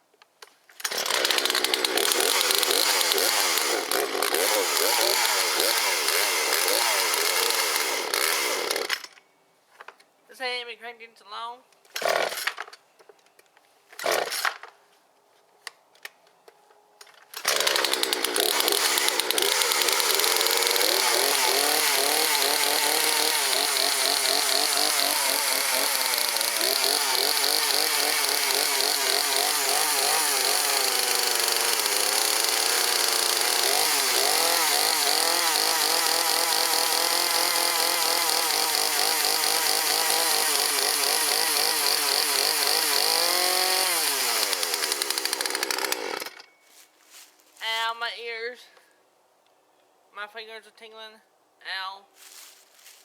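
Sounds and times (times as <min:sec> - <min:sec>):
chainsaw pull-start: 0:00.7 - 0:09.2, 0:11.9 - 0:12.7, 0:14.0 - 0:14.7, 0:17.3 - 0:46.5
chainsaw engine running: 0:00.8 - 0:09.0, 0:17.4 - 0:46.4.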